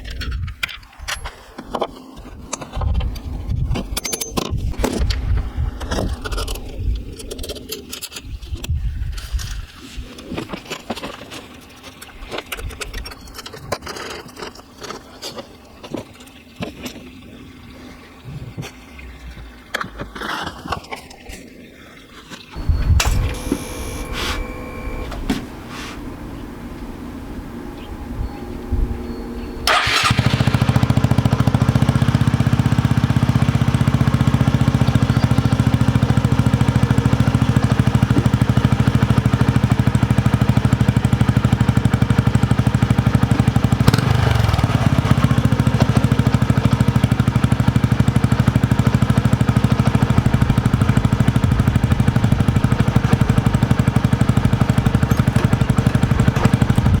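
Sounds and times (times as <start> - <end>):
motorcycle engine starting and idling: 22.6 - 57.0.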